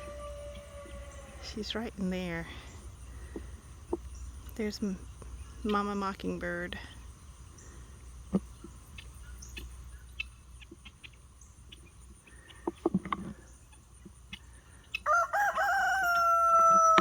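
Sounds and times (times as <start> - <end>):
rooster crowing: 0.0 - 1.4, 15.0 - 17.0
low steady background noise: 0.0 - 17.0.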